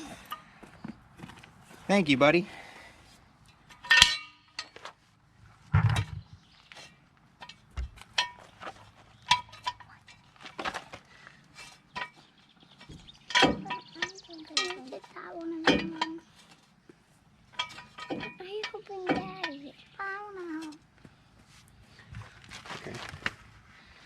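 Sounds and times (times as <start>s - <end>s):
metal tools clinking and clanking: 3.5s - 4.9s, 7.4s - 8.6s, 9.2s - 10.4s, 11.6s - 12.2s, 12.8s - 16.6s, 17.5s - 19.6s.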